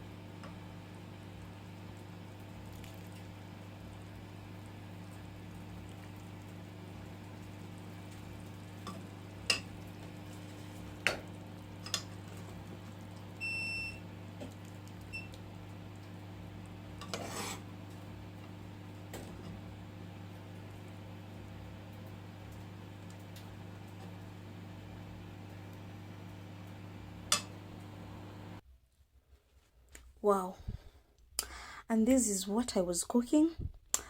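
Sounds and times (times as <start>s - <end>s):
scraping or rustling: 17.0s - 17.6s.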